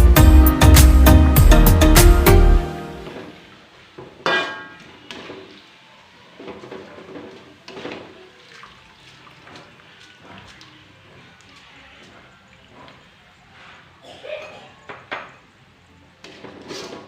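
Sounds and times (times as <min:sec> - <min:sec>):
background music: 0:00.0 - 0:03.6
metal kitchenware clinking: 0:04.2 - 0:05.1.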